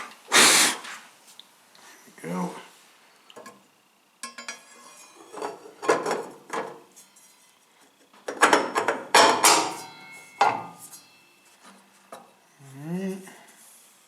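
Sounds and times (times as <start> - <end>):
metal tools clinking and clanking: 4.2 - 7.2, 8.3 - 10.9.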